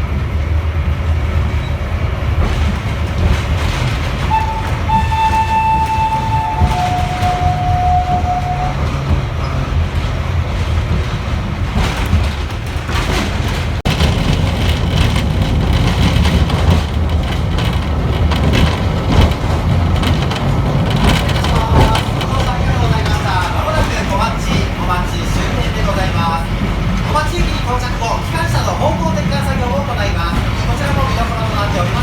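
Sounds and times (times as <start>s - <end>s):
train running with low rumble: 0.0s - 32.0s
train whistle: 4.2s - 9.5s.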